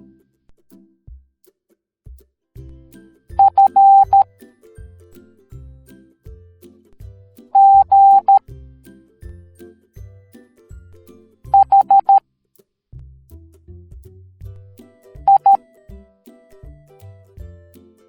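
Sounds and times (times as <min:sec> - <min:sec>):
light background music: 0:02.6 - 0:12.2, 0:13.2 - 0:18.0
morse code beeps: 0:03.4 - 0:04.2, 0:07.6 - 0:08.4, 0:11.6 - 0:12.2, 0:15.3 - 0:15.6.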